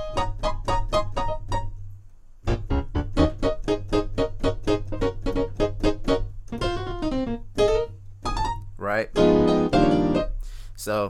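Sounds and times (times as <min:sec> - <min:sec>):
synthesizer piano chords: 0:00.0 - 0:10.5.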